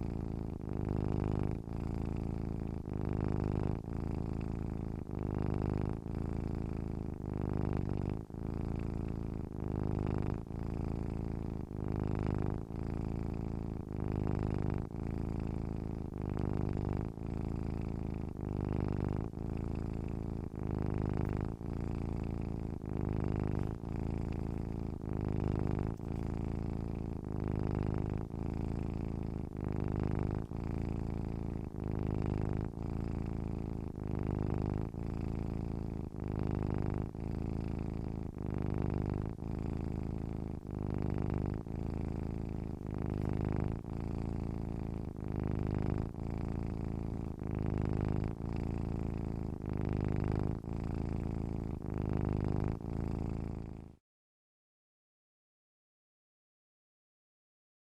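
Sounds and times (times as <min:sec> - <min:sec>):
cat purring: 0:00.0 - 0:54.0.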